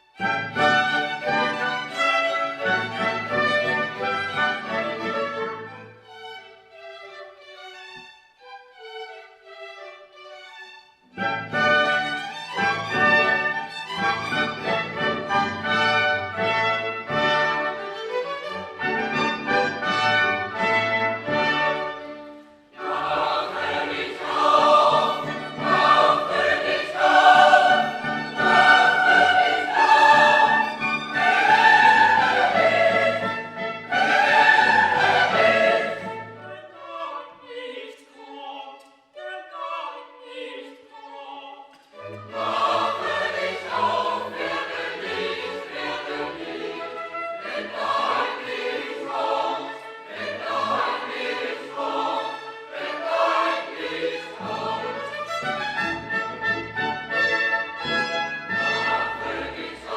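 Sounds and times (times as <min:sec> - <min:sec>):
choir singing: 0:00.2 - 0:05.9, 0:18.8 - 0:59.9
orchestral accompaniment: 0:08.6 - 0:36.5, 0:42.0 - 0:59.9.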